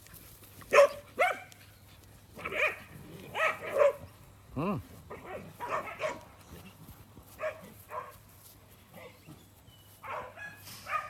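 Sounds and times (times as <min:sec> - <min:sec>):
dogs barking: 0:00.7 - 0:01.6, 0:02.4 - 0:04.1, 0:05.1 - 0:06.3, 0:07.4 - 0:08.2, 0:10.0 - 0:11.0.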